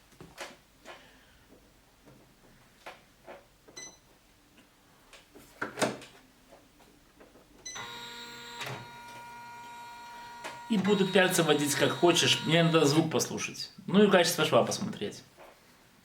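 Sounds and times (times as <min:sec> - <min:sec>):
embroidery machine whining: 0:07.8 - 0:13.1
short electronic beep: 0:10.9 - 0:13.0.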